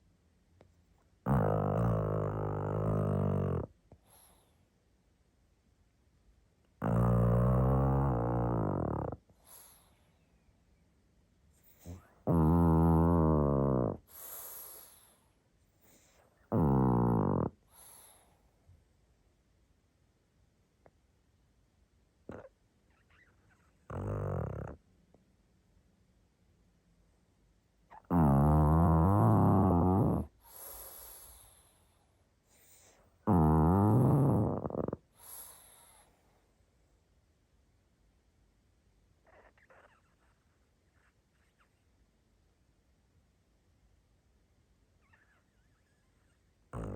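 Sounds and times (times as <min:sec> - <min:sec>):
dog snoring loudly: 0:01.2 - 0:03.7, 0:06.8 - 0:09.8, 0:11.7 - 0:15.2, 0:15.9 - 0:18.2, 0:23.9 - 0:24.8, 0:27.9 - 0:31.7, 0:32.5 - 0:36.2
soft breathy dog breath: 0:03.8 - 0:04.8, 0:09.2 - 0:10.5, 0:11.6 - 0:12.2, 0:14.0 - 0:16.5, 0:17.5 - 0:18.8, 0:30.2 - 0:33.2, 0:34.9 - 0:36.8
soft breathy breath: 0:30.3 - 0:33.2, 0:35.0 - 0:36.6.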